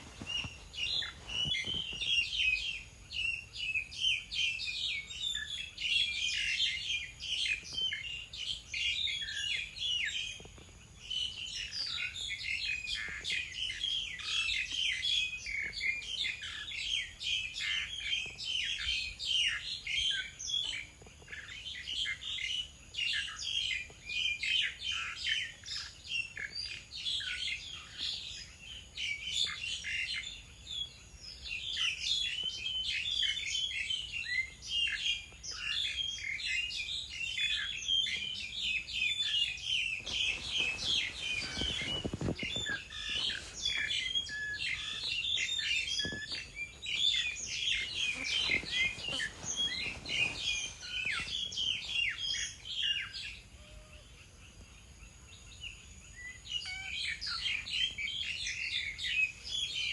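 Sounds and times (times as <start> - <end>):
birds chirping: 0.0 - 59.9.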